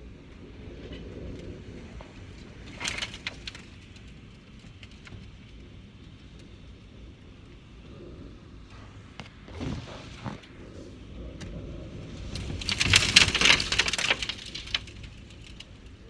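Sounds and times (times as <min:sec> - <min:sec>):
wind gusts: 0:06.5 - 0:16.0
loud crackling rush: 0:07.9 - 0:16.0.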